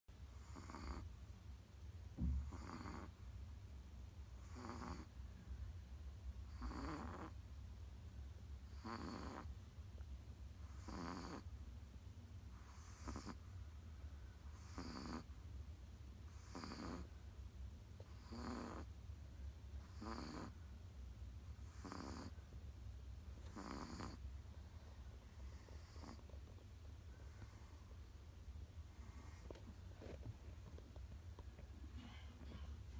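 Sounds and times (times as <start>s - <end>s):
low steady hum: 0.1s - 32.9s
short thump: 2.2s - 2.5s.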